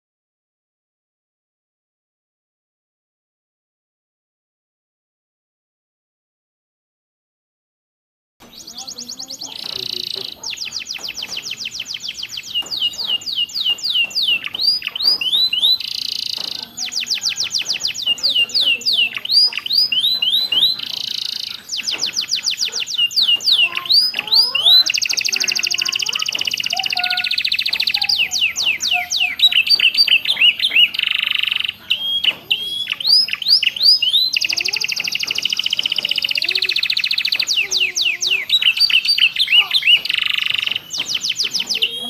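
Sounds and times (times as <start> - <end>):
canary singing: 8.4 - 42.0.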